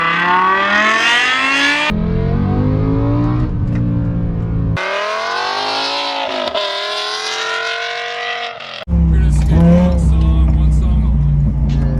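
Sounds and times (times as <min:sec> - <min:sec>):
engine revving hard: 0:04.8 - 0:10.2.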